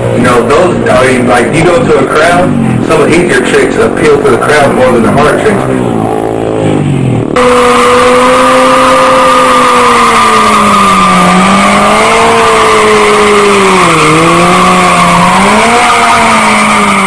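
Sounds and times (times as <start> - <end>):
motorcycle engine at high revs: 0.0 - 17.0
tyre squealing: 7.4 - 17.0.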